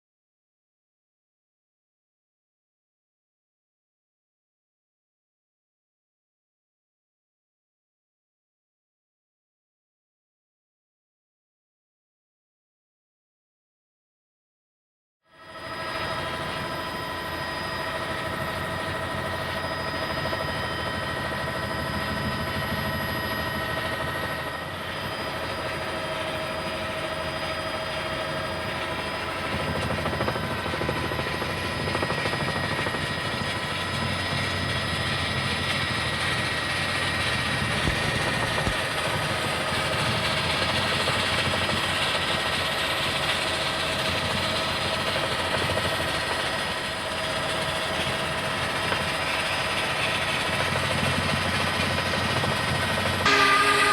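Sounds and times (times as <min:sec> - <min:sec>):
helicopter engine and rotor: 0:15.3 - 0:53.9
high whine: 0:53.2 - 0:53.9.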